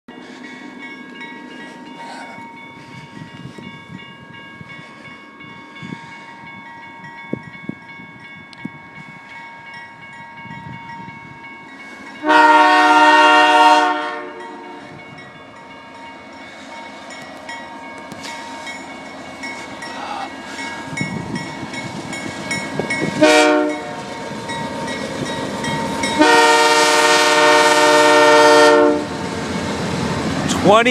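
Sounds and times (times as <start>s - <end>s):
railroad crossing bell ringing: 0.1s - 30.9s
train rumble and wheel clatter: 0.1s - 30.9s
train horn blast: 12.2s - 14.9s, 23.0s - 24.1s, 26.1s - 29.2s.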